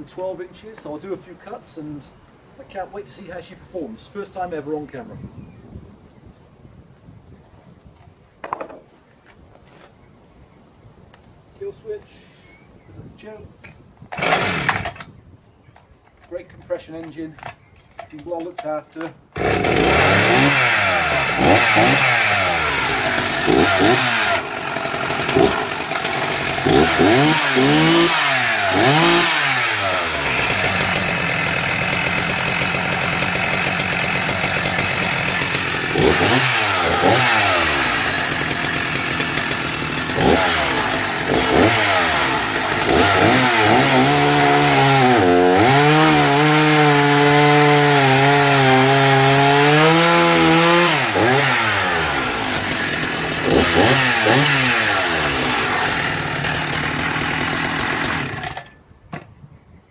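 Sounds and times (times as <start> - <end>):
chainsaw revving: 14.1 - 15.0, 19.3 - 58.8.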